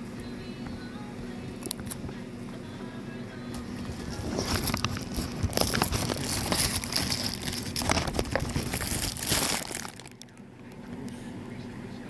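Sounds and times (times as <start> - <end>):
rustling and crackling: 3.6 - 10.3.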